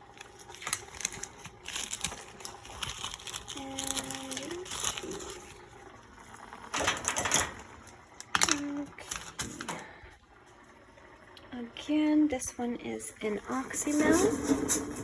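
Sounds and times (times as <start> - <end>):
plastic bag crinkling: 0.0 - 9.9.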